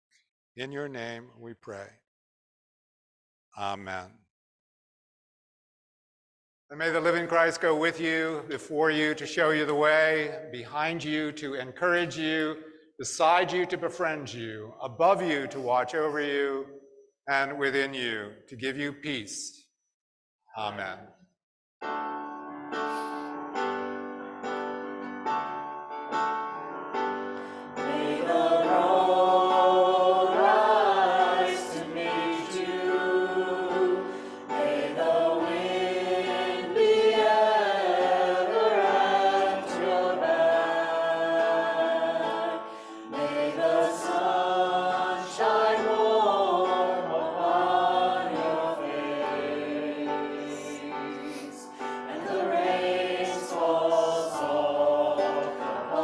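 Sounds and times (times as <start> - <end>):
church choir singing: 6.8 - 16.8, 26.6 - 56.0.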